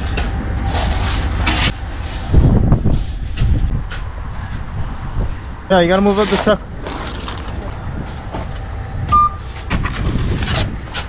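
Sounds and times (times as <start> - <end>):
truck engine rumbling: 5.7 - 9.7
scraping bursts: 6.0 - 8.1.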